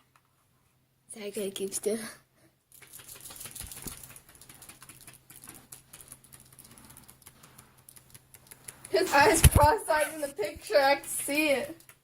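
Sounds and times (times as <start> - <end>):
small irregular handling clicks: 2.7 - 9.0.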